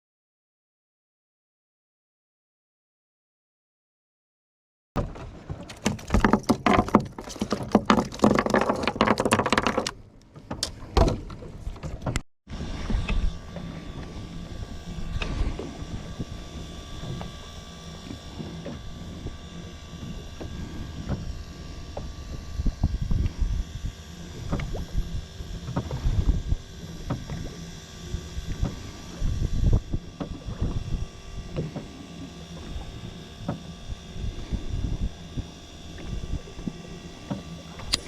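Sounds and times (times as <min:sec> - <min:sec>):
boat engine hum: 0:05.0 - 0:38.0
water noise: 0:05.0 - 0:38.0
wind: 0:05.0 - 0:38.0
clattering and knocking: 0:05.8 - 0:09.9.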